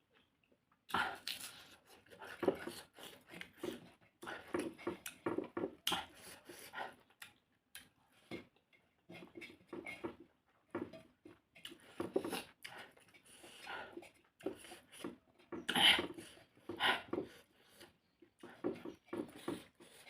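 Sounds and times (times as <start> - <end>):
person chewing and lip smacking: 0.9 - 8.0.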